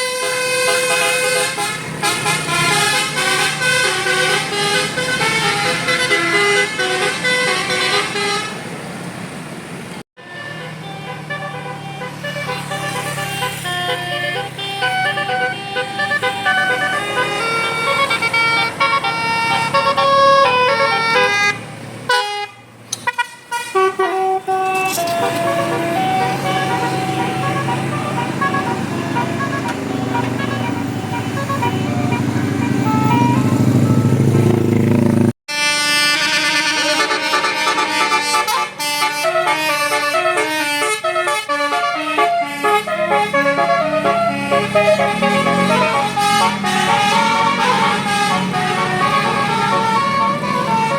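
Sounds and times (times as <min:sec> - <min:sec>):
bus horn playing melody: 0:00.0 - 0:08.7, 0:10.2 - 0:50.9
short horn toots: 0:22.1 - 0:34.2.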